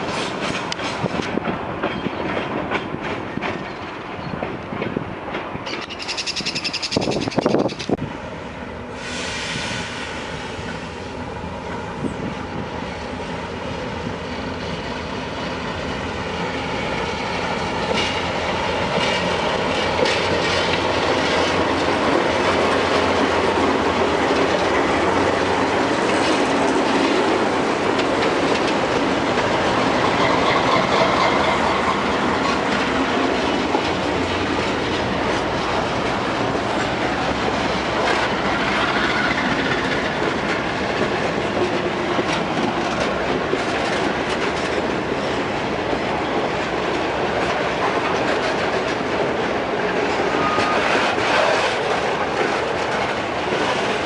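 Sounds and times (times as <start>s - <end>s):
train wheels clacking: 0.0s - 8.0s, 16.3s - 54.0s
wheel squeal: 5.7s - 7.9s, 50.3s - 51.0s.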